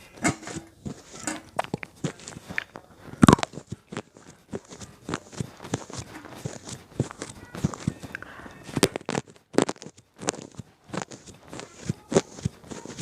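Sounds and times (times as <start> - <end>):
slate pencil crunching when chewed: 0.8 - 13.0.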